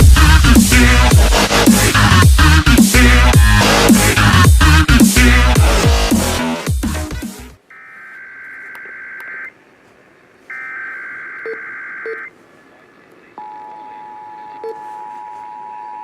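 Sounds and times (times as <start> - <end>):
radio static: 10.4 - 13.4.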